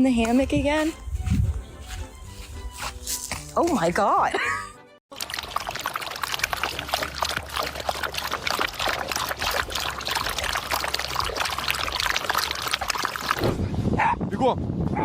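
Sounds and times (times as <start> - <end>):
running water splashing: 5.1 - 13.5.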